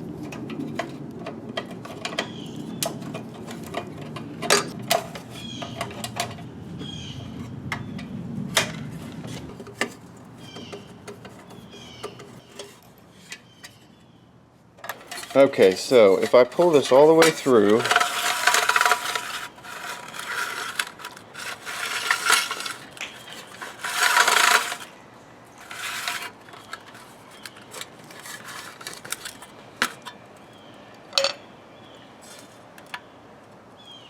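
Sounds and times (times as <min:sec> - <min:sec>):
pull cord scraping through housing: 0:14.8 - 0:24.9, 0:25.6 - 0:30.1.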